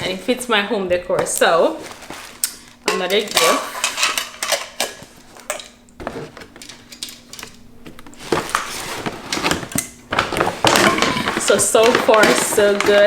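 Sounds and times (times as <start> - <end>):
gift bag paper rustling: 1.4 - 4.1, 7.6 - 13.0
objects clicking and knocking: 2.4 - 13.0.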